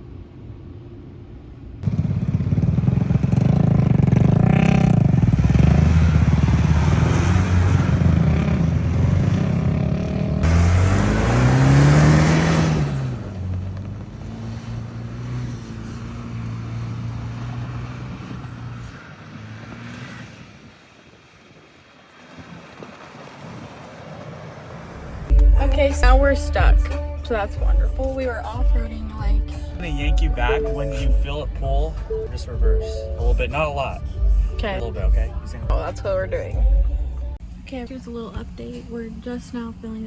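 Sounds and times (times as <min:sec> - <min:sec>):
vehicle engine revving on sand: 0:01.8 - 0:21.4, 0:28.2 - 0:35.9.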